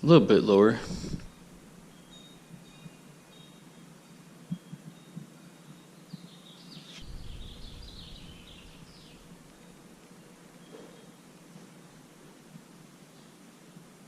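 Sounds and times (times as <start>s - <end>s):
bird chirping faintly: 1.2s - 11.3s
low rumble: 7.0s - 9.9s.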